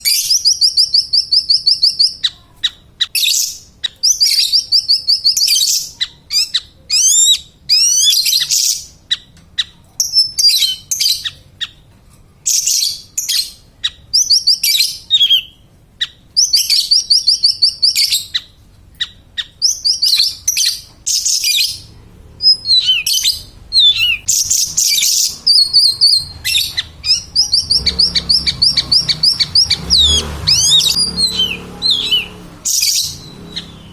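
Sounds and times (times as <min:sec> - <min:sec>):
songbird chattering and trilling: 0:12.5 - 0:33.9.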